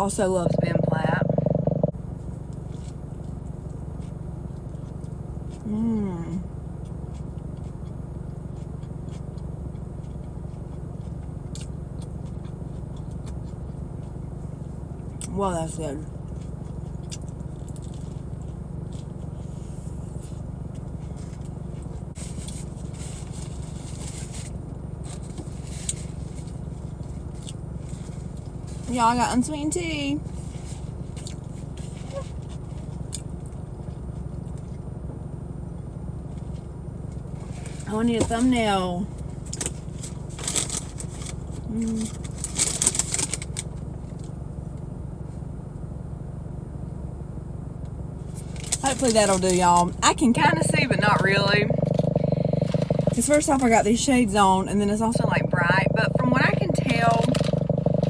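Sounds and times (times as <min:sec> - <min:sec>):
parked car engine rumbling: 0:00.0 - 0:58.0
crackly rustling: 0:48.2 - 0:58.0.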